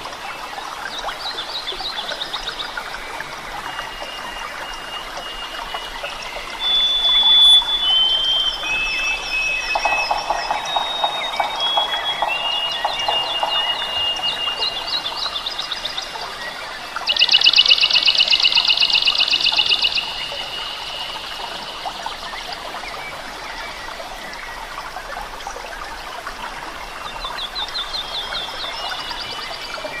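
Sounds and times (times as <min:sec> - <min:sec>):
steady high whine: 0:03.6 - 0:23.1
high chirps: 0:04.1 - 0:16.3, 0:17.1 - 0:22.7
fast pulsed trill: 0:06.6 - 0:15.8.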